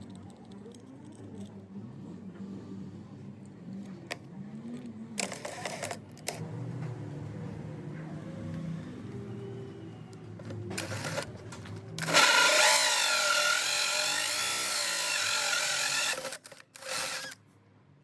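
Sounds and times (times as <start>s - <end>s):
power drill cutting into wood: 12.0s - 17.4s.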